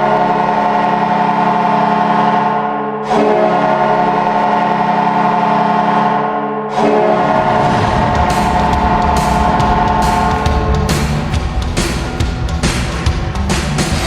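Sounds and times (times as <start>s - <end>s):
hockey goal horn blasts: 0.0s - 7.5s.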